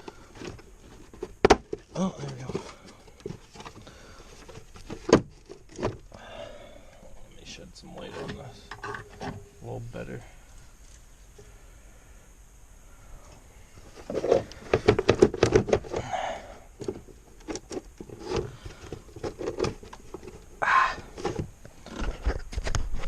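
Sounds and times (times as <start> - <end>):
clicks and rattles of parts handled: 8.2 - 9.5, 13.9 - 16.0, 16.8 - 20.5.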